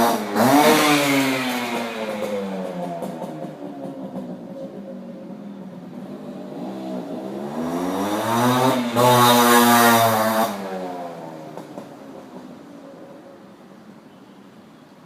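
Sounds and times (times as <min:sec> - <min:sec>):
two-stroke motorcycle engine revving: 0:00.0 - 0:04.6, 0:05.2 - 0:12.5.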